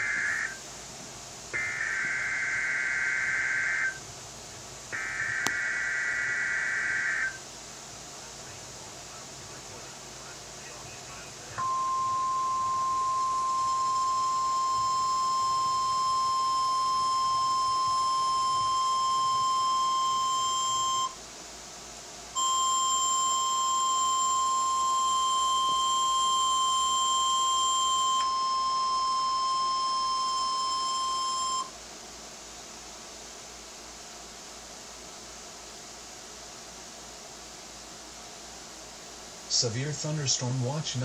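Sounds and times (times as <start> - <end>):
steady warning alarm tone: 0.0 - 0.6, 1.5 - 4.1, 4.9 - 7.5, 9.5 - 21.2, 22.3 - 31.8.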